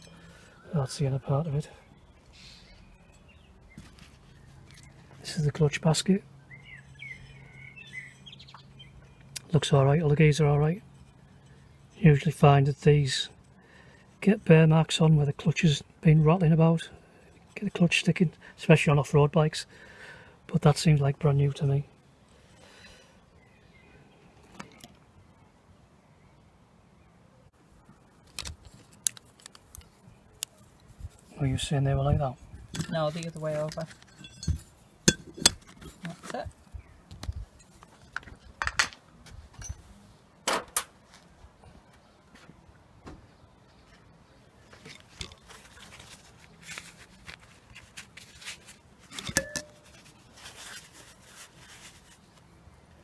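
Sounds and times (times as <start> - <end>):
light clicks and scrapes of tools: 2.3 - 5.5, 28.2 - 31.4, 32.7 - 40.1, 44.7 - 52.4
sharp metal knocks: 34.0 - 35.7.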